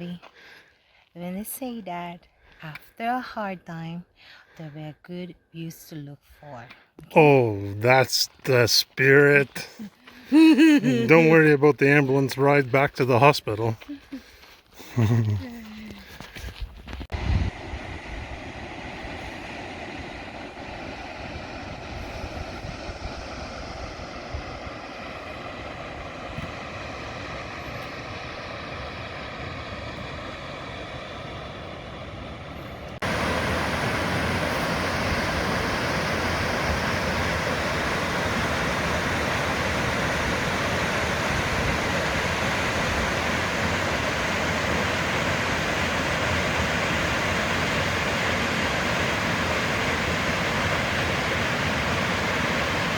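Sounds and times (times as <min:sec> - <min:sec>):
waterfall and creek rushing: 0:07.2 - 0:09.7, 0:10.3 - 0:13.8, 0:33.0 - 0:52.9.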